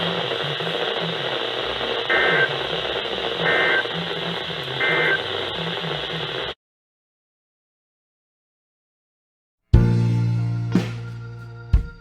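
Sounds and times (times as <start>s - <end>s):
data tone bursts: 0.0s - 6.6s
radio hiss: 0.0s - 6.6s.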